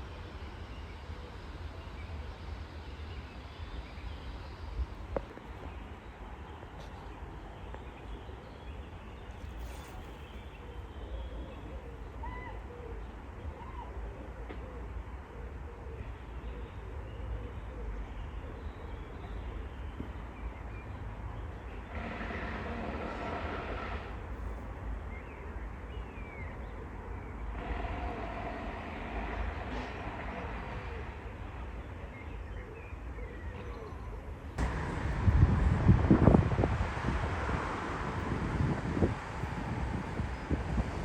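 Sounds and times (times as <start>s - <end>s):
distant traffic: 0.0s - 41.0s
distant steady tonal hum: 21.0s - 41.0s
wind rumble: 34.6s - 41.0s.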